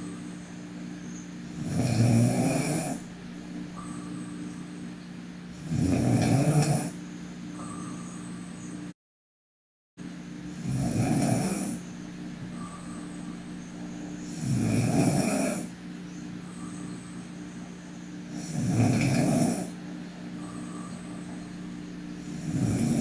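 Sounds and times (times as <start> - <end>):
steady low hum: 0.0 - 9.0, 10.0 - 23.0
woman snoring: 1.4 - 3.2, 5.5 - 7.0, 10.5 - 11.9, 12.5 - 15.8, 18.3 - 19.8, 21.9 - 23.0
faint breaths: 10.4 - 15.8, 20.4 - 23.0.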